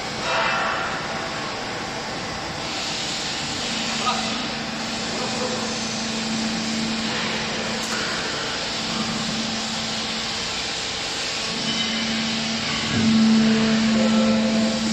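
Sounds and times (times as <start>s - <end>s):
machine noise: 2.5s - 14.9s
pump motor humming: 3.7s - 14.9s.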